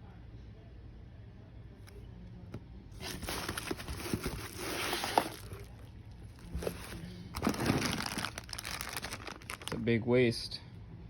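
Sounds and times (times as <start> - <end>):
packaging rustling: 3.0 - 9.8.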